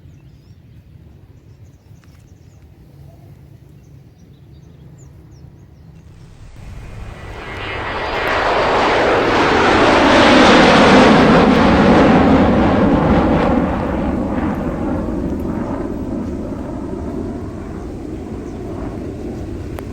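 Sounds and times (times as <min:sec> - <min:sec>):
vehicle passing close: 0:06.1 - 0:16.5.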